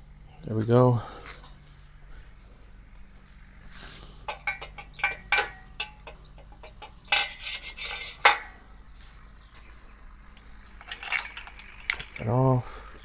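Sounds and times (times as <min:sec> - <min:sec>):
metal hardware clinking: 0:04.3 - 0:08.6, 0:10.4 - 0:12.4.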